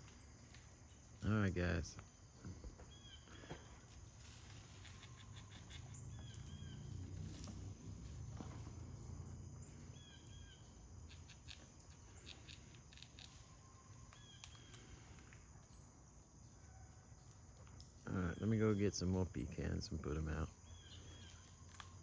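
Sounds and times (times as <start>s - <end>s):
small clicks and rustles: 3.4s - 8.8s, 11.1s - 15.8s, 21.2s - 22.0s.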